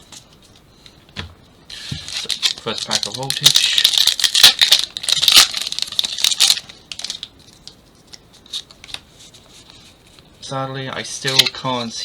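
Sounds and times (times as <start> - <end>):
foil wrapper crinkling: 1.8 - 7.3.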